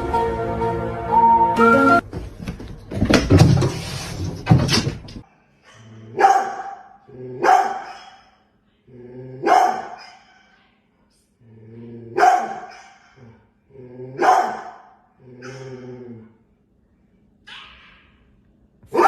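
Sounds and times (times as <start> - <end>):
dog barking: 6.2 - 8.4, 9.4 - 10.5, 12.2 - 13.2, 14.2 - 15.8.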